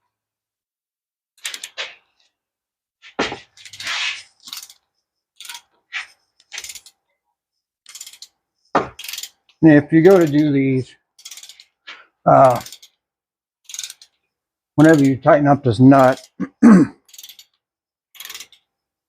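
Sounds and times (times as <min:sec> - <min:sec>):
metal scrape: 0:03.0 - 0:04.8, 0:05.4 - 0:07.0
metallic clinks of hand tools: 0:10.1 - 0:10.6, 0:12.3 - 0:12.9, 0:14.8 - 0:15.3.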